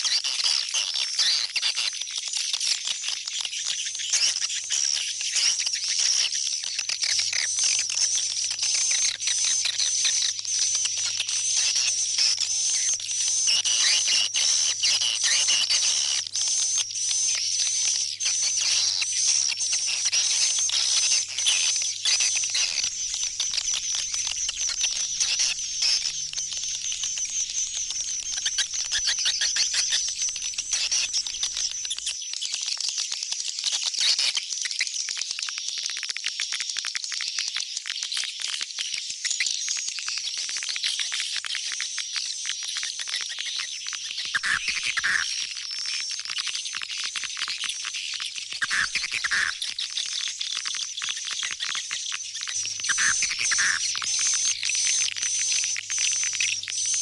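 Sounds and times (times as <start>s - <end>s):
swiftlets twittering: 10.8s - 32.0s.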